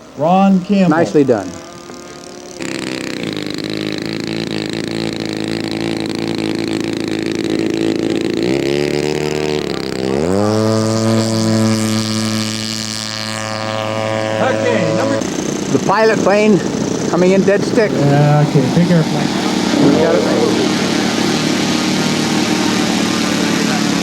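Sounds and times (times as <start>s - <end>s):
model airplane engine running: 0.0s - 24.0s.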